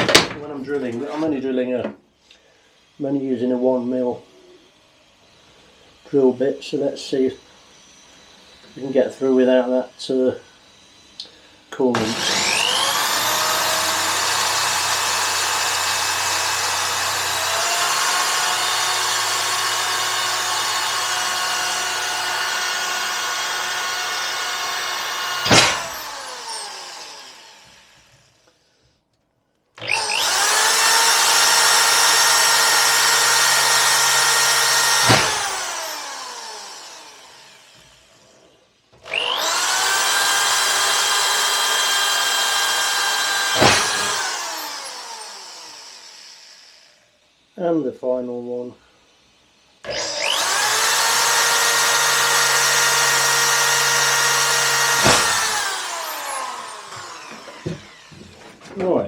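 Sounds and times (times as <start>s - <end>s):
electric drill whining: 3.9s - 29.0s, 29.8s - 47.6s, 48.8s - 58.7s.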